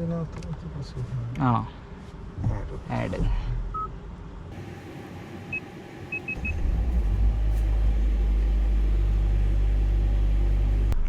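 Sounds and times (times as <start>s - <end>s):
diesel engine rumble: 4.5s - 11.0s
short electronic beeps: 5.5s - 6.6s.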